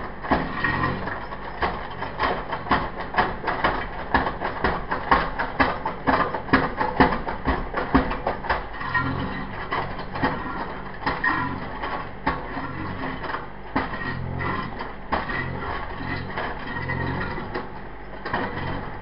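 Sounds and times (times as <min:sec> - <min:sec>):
digger engine running: 0:00.0 - 0:19.0
mini digger metallic clanking: 0:00.0 - 0:19.0.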